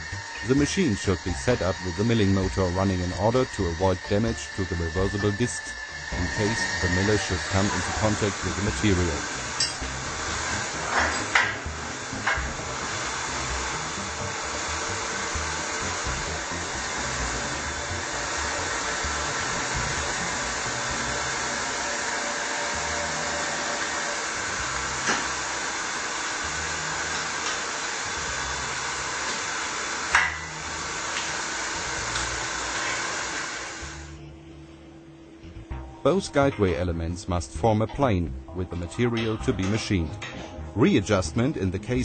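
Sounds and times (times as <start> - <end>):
milling machine motor whirring: 0.0 - 34.2.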